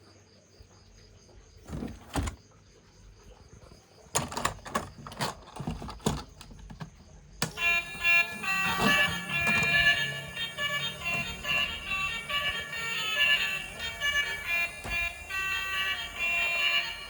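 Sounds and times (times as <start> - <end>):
plastic knocking and scraping: 1.6 - 2.4
melodic music: 7.6 - 17.0.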